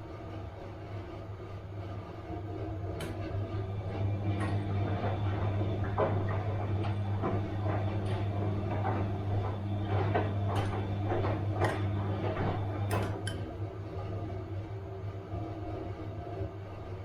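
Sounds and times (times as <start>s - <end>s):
washing machine motor humming: 0.0s - 17.0s.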